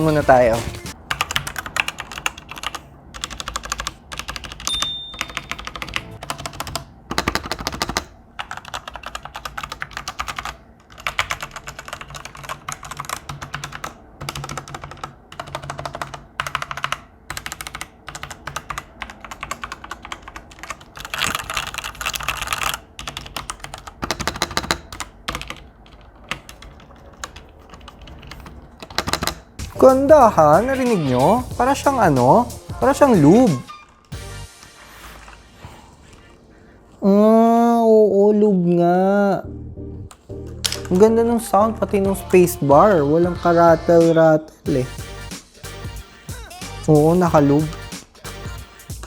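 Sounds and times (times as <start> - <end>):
mechanical keyboard typing: 0.0 - 30.8.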